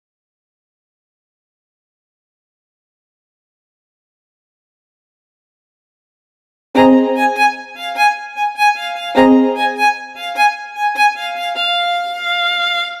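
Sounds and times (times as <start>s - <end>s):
bowed string melody: 6.8s - 13.0s.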